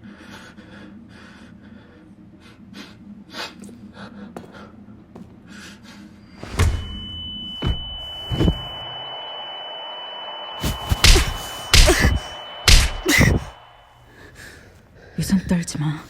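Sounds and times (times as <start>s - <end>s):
high ringing tone: 6.2s - 14.1s
low hum: 6.2s - 15.0s
heavy thud: 6.4s - 8.8s, 10.6s - 13.6s
noisy breath-like bursts: 8.4s - 15.1s.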